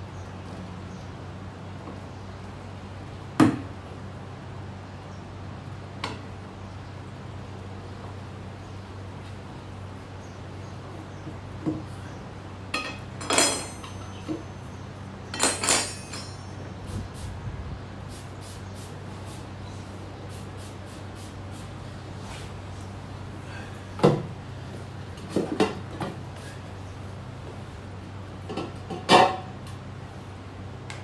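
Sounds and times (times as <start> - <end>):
steady low hum: 0.0 - 28.6
metal tools clanking on wheel rim: 11.6 - 16.9, 28.5 - 29.8.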